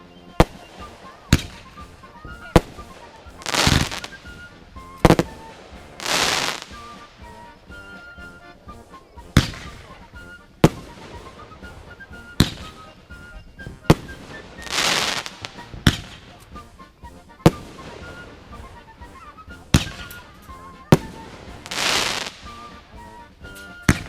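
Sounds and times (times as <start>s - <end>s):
fireworks bangs: 0.4s - 7.6s, 9.3s - 16.5s, 17.4s - 19.0s, 19.7s - 22.8s
fireworks hiss: 2.4s - 4.3s, 5.0s - 7.1s, 13.7s - 16.4s, 21.0s - 22.6s.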